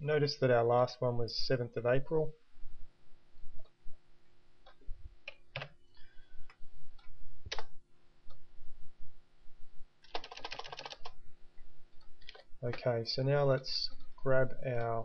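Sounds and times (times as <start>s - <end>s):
faint steady hum: 0.0s - 15.0s
computer mouse and keyboard clicks: 10.0s - 11.2s, 12.2s - 12.5s.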